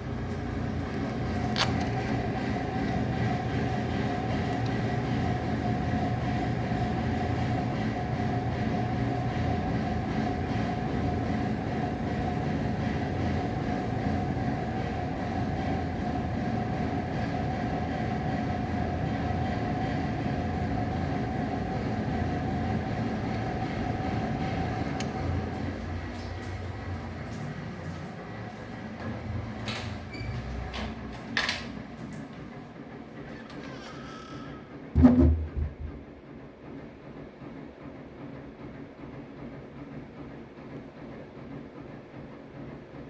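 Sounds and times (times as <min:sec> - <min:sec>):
mid-pitched hum: 0:00.0 - 0:32.8
low mechanical rumble: 0:00.0 - 0:36.3.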